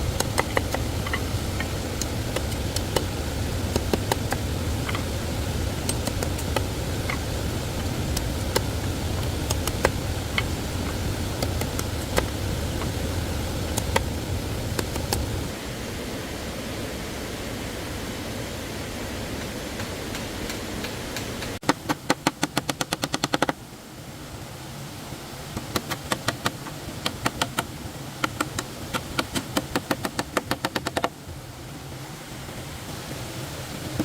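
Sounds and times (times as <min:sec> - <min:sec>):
stream water rushing: 0:00.0 - 0:34.0
rapid sharp knocks: 0:21.6 - 0:23.6, 0:25.6 - 0:31.1.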